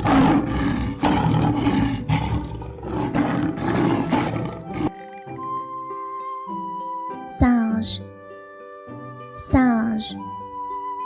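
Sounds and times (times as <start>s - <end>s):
tiger roaring: 0.0s - 5.0s
soft background music: 0.0s - 11.0s.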